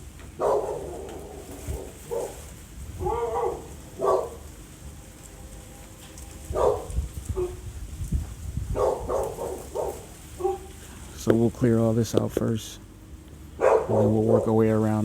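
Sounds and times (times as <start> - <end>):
dog barking: 0.4 - 2.4, 3.0 - 4.4, 6.5 - 7.6, 8.7 - 10.8, 13.6 - 14.6.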